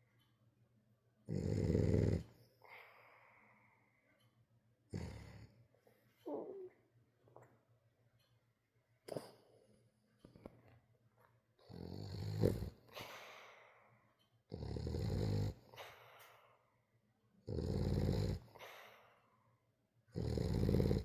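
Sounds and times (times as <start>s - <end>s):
dog snoring loudly: 1.3s - 2.4s, 4.9s - 5.5s, 11.6s - 12.8s, 14.5s - 15.8s, 17.4s - 18.6s, 20.1s - 21.0s.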